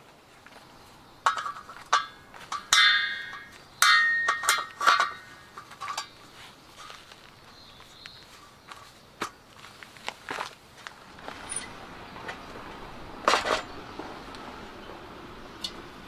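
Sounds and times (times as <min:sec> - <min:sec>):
metal objects clinking: 0:01.2 - 0:06.2.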